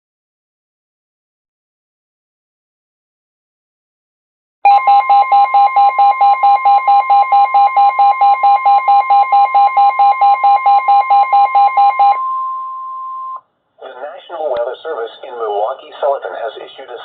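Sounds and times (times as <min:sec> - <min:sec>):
rapid alarm beeping: 0:04.7 - 0:13.4
steady warning alarm tone: 0:04.7 - 0:13.4.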